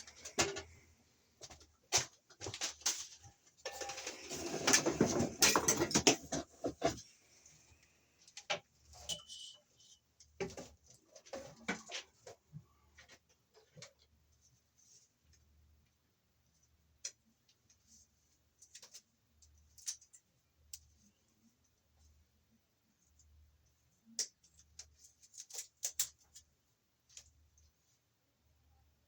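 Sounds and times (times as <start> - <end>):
scraping and rustling: 1.5 - 7.3.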